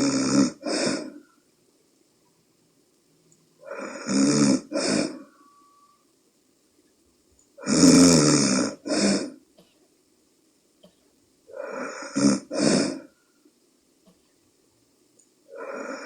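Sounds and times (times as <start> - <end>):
woman snoring: 0.0 - 1.2, 3.6 - 6.0, 7.6 - 9.4, 11.5 - 13.2, 15.5 - 16.0.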